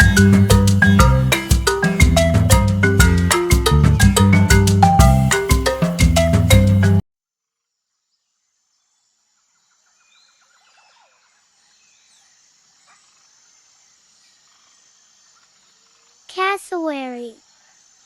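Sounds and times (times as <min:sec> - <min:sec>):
birds chirping: 0:00.0 - 0:07.0
marimba music sting: 0:00.0 - 0:07.0
high insect hiss: 0:08.2 - 0:18.0.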